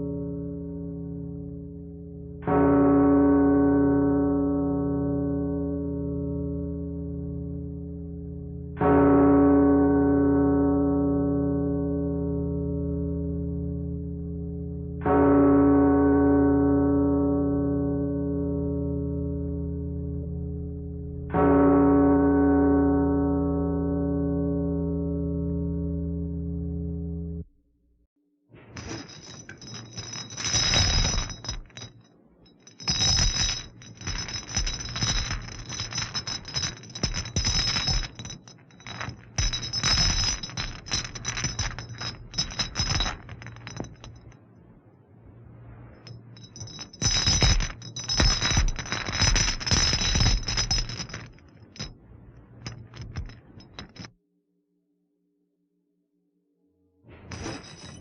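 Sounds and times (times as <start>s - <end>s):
metallic rattling and clinking: 28.8s - 44.4s, 46.0s - 54.1s, 57.3s - 58.0s.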